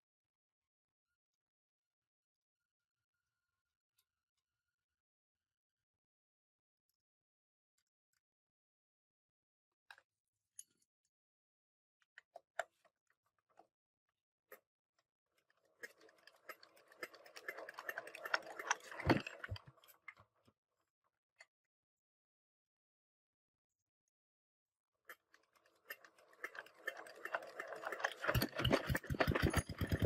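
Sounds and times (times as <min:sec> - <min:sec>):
rattling and clattering: 0:15.8 - 0:19.9, 0:25.8 - 0:30.0.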